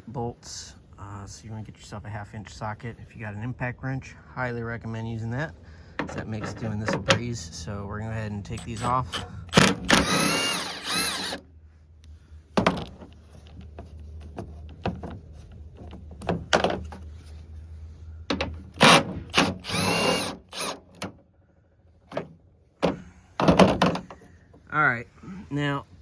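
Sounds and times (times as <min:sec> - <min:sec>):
impact wrench whining: 0:08.7 - 0:11.4, 0:18.7 - 0:21.1, 0:22.8 - 0:24.2.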